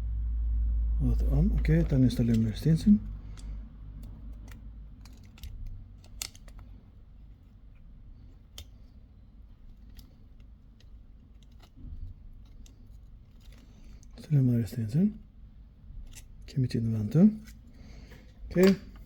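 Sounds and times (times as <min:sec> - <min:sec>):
faint low hum: 0:00.0 - 0:19.0
small hand tools clicking: 0:01.6 - 0:06.7, 0:09.6 - 0:14.2.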